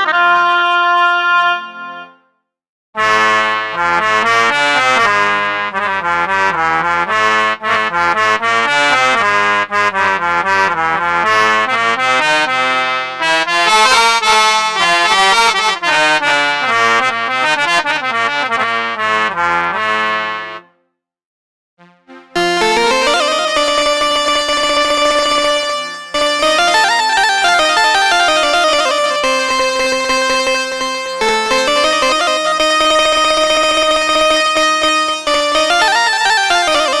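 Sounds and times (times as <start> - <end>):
keyboard melody over chords: 10.3 - 19.1, 21.8 - 37.0.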